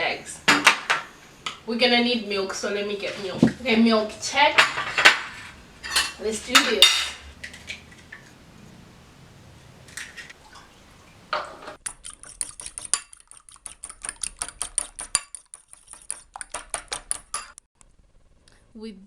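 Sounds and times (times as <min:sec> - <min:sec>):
soft knocks: 0:03.2 - 0:03.7
fork beating eggs in a bowl: 0:11.5 - 0:17.5.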